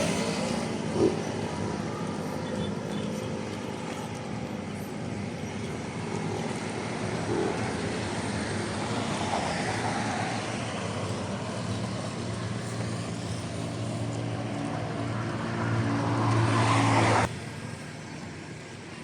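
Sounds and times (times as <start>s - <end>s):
engine approaching: 0.0s - 19.0s
vehicle passing: 6.1s - 17.3s.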